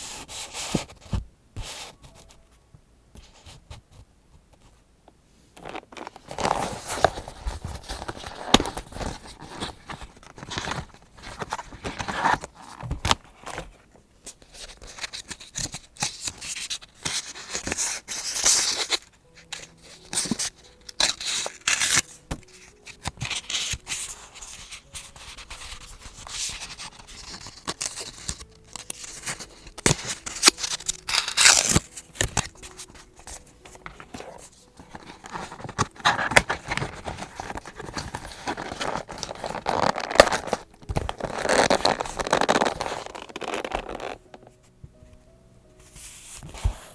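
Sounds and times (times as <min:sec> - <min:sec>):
paper rustling and scraping: 0:05.6 - 0:44.6, 0:45.8 - 0:46.9
scissors cutting paper: 0:17.0 - 0:24.0, 0:25.6 - 0:32.8.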